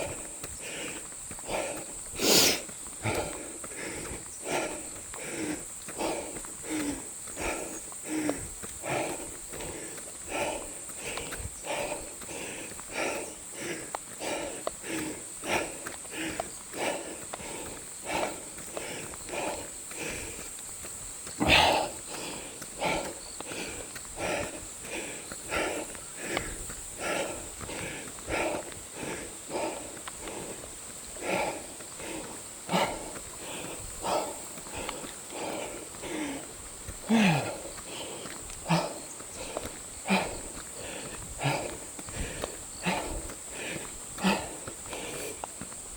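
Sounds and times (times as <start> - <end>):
runner panting: 0.0 - 45.9
loud gasp: 21.4 - 30.4, 37.1 - 45.3.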